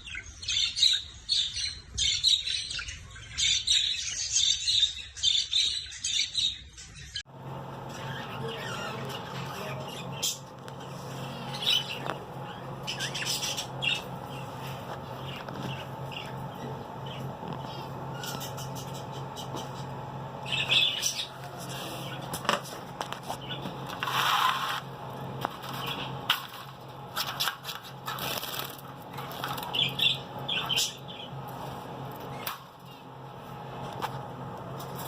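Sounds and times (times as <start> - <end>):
steady low hum: 7.2 - 35.0
finches fluttering in a cage: 7.5 - 34.2
finch chirps: 7.9 - 22.4, 27.2 - 31.5.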